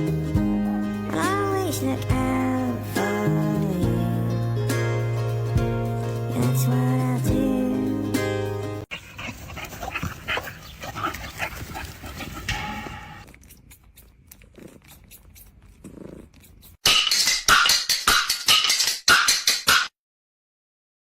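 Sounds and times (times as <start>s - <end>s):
dog vocalizing low: 8.9s - 16.7s.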